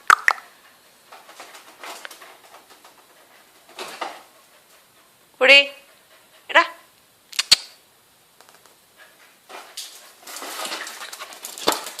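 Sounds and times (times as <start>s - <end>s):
rough scraping and rattling: 9.5s - 12.0s.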